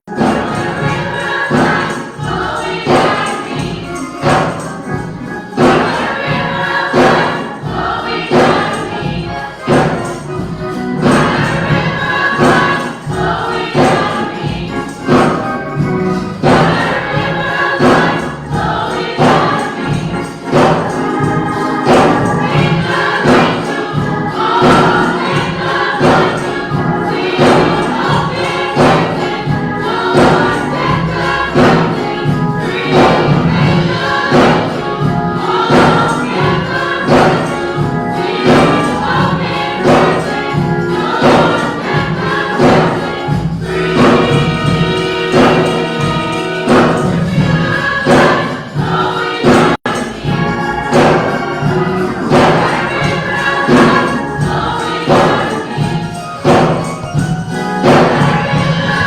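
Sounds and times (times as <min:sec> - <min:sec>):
choir singing: 0:00.1 - 0:59.0
tambourine: 0:00.1 - 0:59.0
band with driving beat: 0:30.2 - 0:55.6.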